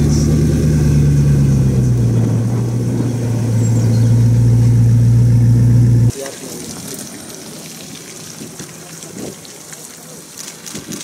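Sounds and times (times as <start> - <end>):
car engine running: 0.0 - 6.1.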